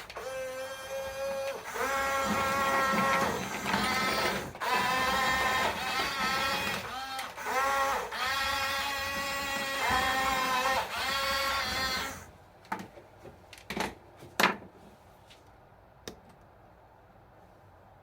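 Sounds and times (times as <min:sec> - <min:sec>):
toy electric motors whining: 0:00.0 - 0:12.3.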